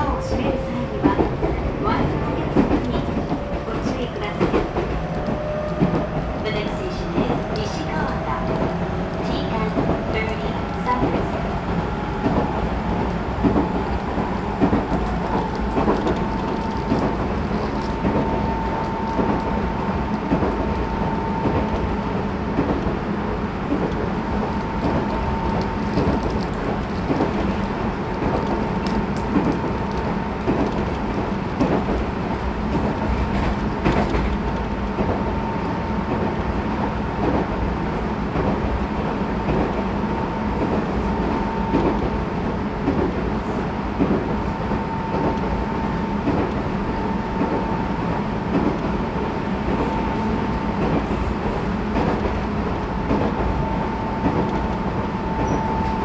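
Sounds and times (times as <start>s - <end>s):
train wheels rumbling on rails: 0.0s - 56.0s
wheels clicking over rail joints: 13.1s - 19.5s, 23.6s - 34.3s.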